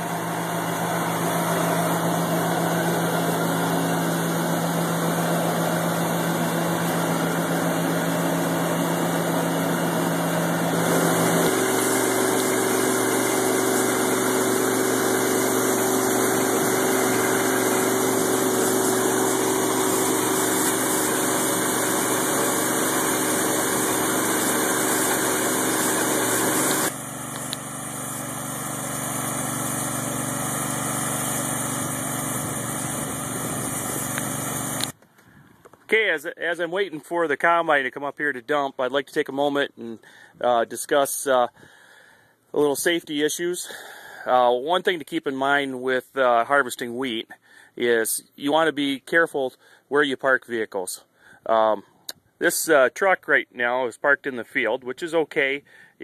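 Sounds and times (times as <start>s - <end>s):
combine harvester drone: 0.0s - 35.0s.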